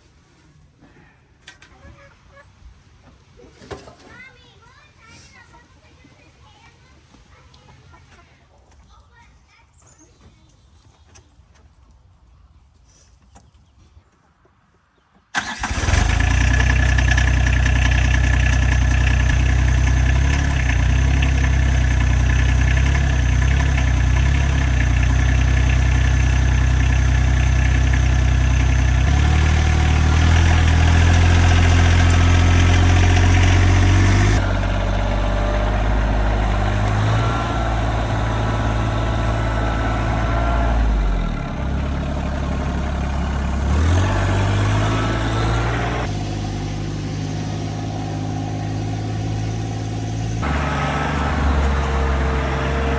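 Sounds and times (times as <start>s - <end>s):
tractor engine running: 15.4s - 52.9s.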